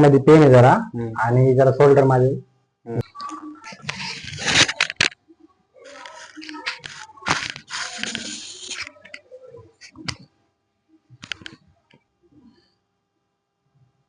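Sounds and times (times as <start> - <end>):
rustling and shuffling: 3.1 - 10.3.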